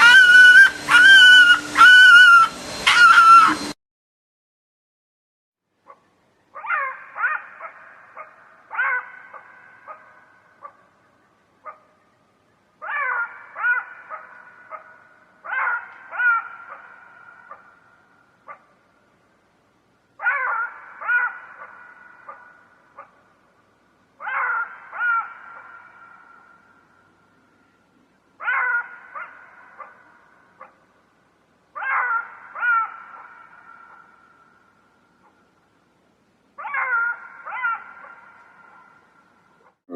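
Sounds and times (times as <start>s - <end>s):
animal crying out: 0.0s - 3.8s, 6.6s - 10.0s, 12.8s - 17.8s, 20.2s - 23.1s, 24.2s - 26.5s, 28.4s - 30.7s, 31.8s - 34.3s, 36.6s - 39.0s
dog yelping: 0.0s - 3.8s, 6.6s - 10.8s, 12.8s - 17.8s, 18.5s - 18.7s, 20.2s - 23.2s, 24.2s - 26.5s, 28.4s - 30.8s, 31.8s - 34.3s, 36.6s - 39.0s.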